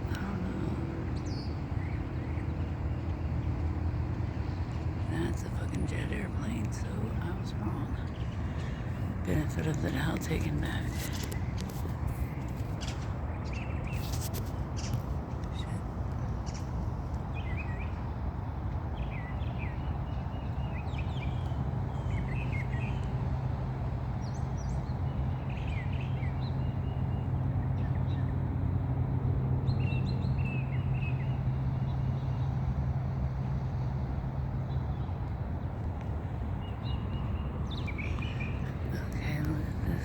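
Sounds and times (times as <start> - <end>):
birds chirping: 0.0 - 18.0, 34.6 - 40.0
distant jet rumbling overhead: 0.0 - 20.3, 21.1 - 40.0.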